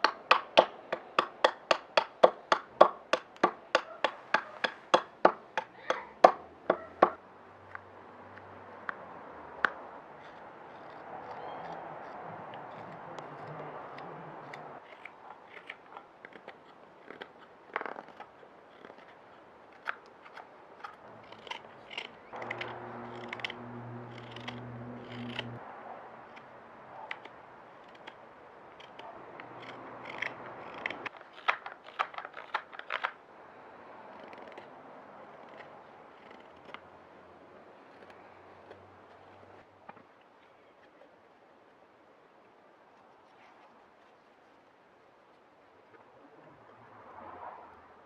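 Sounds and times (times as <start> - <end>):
carving tool cutting wood: 0.0 - 7.2, 10.2 - 25.6, 27.1 - 33.2, 34.1 - 36.9
low steady hum: 22.2 - 25.6.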